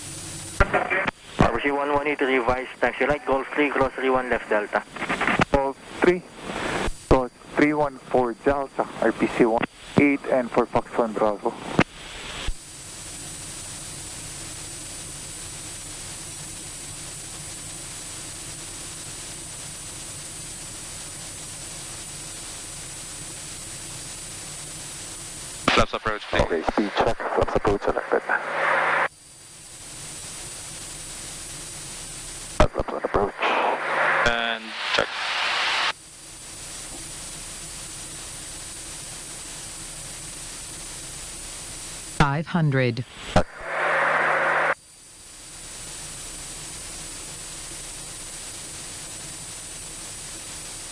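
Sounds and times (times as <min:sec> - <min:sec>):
faint high whine: 0:00.0 - 0:14.7, 0:20.3 - 0:50.9
cockpit audio hiss: 0:00.0 - 0:50.9
faint low hum: 0:00.2 - 0:11.8, 0:25.7 - 0:50.8.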